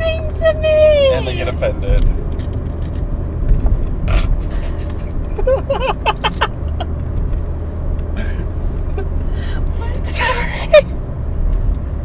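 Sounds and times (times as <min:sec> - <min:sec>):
person's voice: 0:00.0 - 0:01.7
car cabin road rumble: 0:00.0 - 0:12.0.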